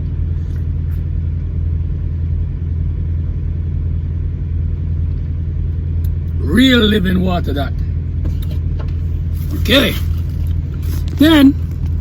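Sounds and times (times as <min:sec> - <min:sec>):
truck engine idling: 0:00.0 - 0:12.0.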